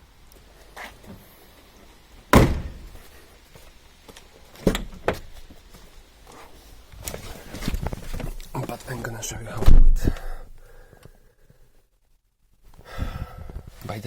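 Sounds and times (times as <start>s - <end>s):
loud thunk: 2.3s - 2.9s, 9.6s - 10.1s.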